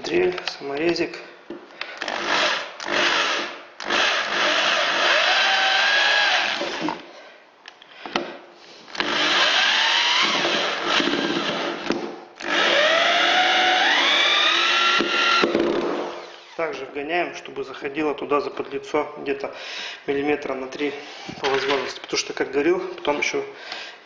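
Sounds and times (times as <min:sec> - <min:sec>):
electric drill whining: 0:02.0 - 0:07.0, 0:09.0 - 0:16.6.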